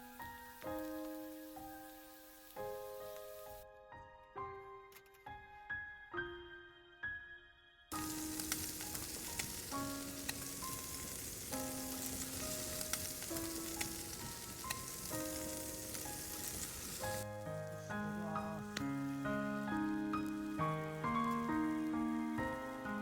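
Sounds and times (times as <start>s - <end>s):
food sizzling: 0.0s - 3.6s, 7.9s - 23.0s
slow melody of held notes: 5.7s - 23.0s.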